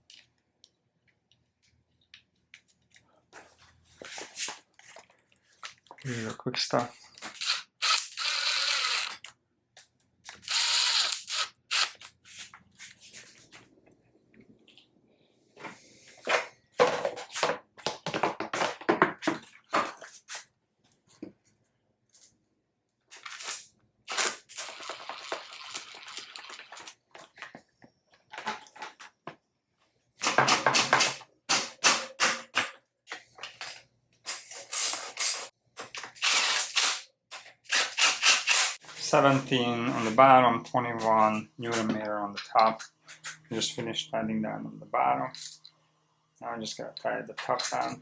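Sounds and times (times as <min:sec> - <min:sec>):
ratchet wrench clicking: 0:10.5 - 0:12.0.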